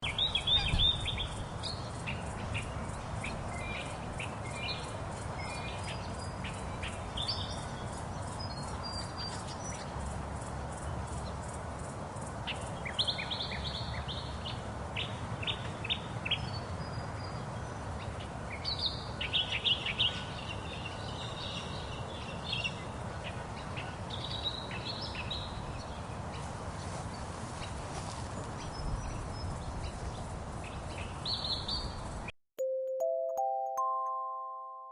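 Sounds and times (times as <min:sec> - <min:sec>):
birds chirping: 0:00.0 - 0:11.6.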